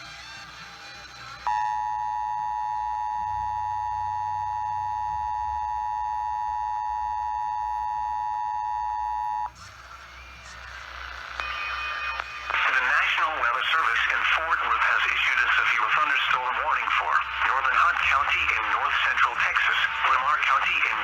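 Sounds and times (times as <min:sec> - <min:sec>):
two-tone alarm signal: 0:01.5 - 0:09.5.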